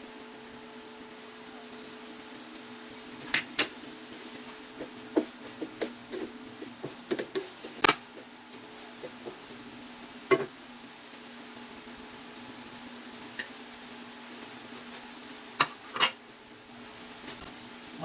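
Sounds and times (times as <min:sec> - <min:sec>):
steady hum: 0:00.0 - 0:18.0
utensil scraping frying pan: 0:03.2 - 0:09.6, 0:15.5 - 0:16.2.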